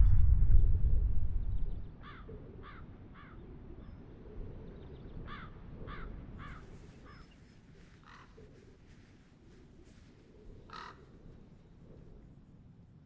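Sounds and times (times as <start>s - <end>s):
low rumble: 0.0s - 2.1s
crows cawing: 2.0s - 3.4s, 5.3s - 8.8s, 10.6s - 11.3s.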